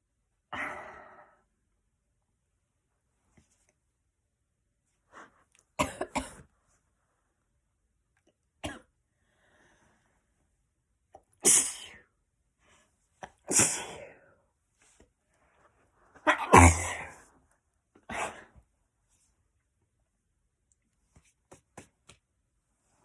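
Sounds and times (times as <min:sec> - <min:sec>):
girl sneezing: 0:11.4 - 0:12.0, 0:13.3 - 0:14.1, 0:16.3 - 0:17.2.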